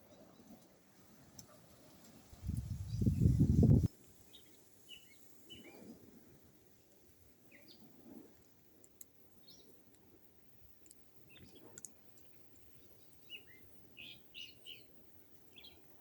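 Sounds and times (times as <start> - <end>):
birds chirping: 1.3 - 5.8, 11.2 - 16.0.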